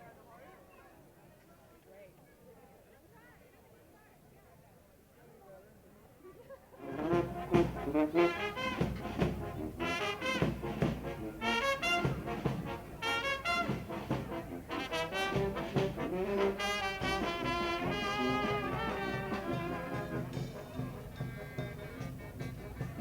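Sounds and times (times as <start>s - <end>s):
horns playing a melody: 6.8s - 23.0s
steady drum beat: 6.9s - 23.0s.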